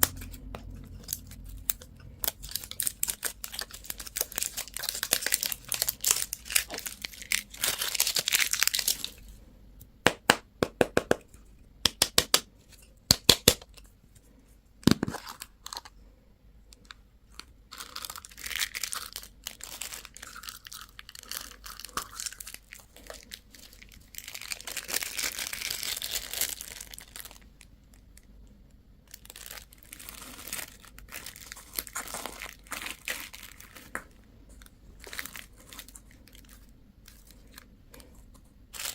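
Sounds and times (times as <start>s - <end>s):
plastic wrappers crinkling and tearing: 0.0s - 9.4s, 14.8s - 16.0s, 16.8s - 28.3s, 29.0s - 38.9s.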